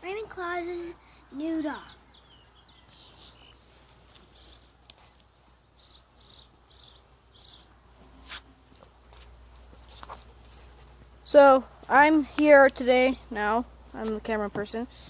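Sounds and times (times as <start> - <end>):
high-pitched wildlife chirps: 5.8 - 7.7.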